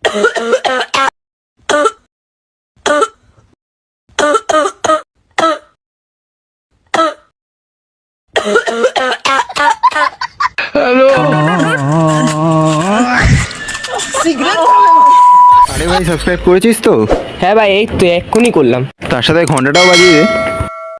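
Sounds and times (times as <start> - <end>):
man coughing: 8.4 - 9.5
drawn-out wavering vocal sound: 10.6 - 13.6.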